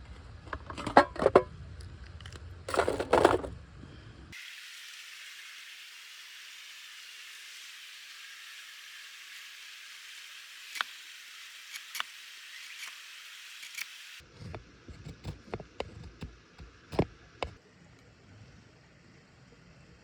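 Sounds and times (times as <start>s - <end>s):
wood fire hissing and crackling: 4.3s - 14.3s.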